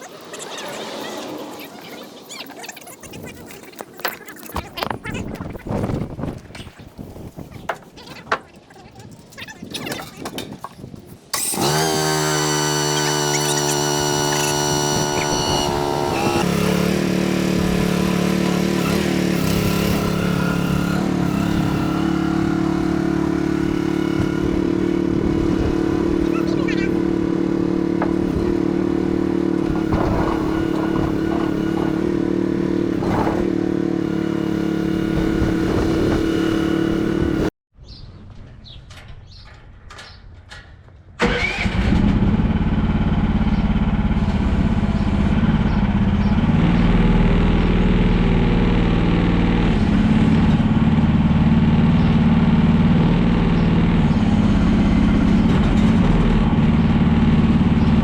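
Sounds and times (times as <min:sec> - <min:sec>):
engine running: 0:11.3 - 0:37.5, 0:41.2 - 0:58.0
lower engine starting up: 0:11.3 - 0:37.5, 0:41.2 - 0:58.0.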